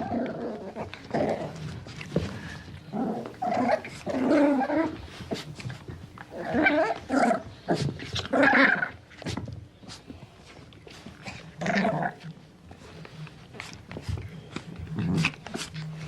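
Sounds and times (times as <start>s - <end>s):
puppy vocalising: 6.3s - 9.0s.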